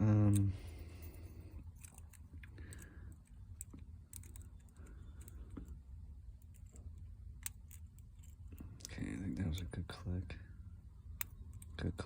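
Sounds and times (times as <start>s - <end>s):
lock pick clicking in padlock: 1.7s - 5.4s, 7.4s - 8.9s.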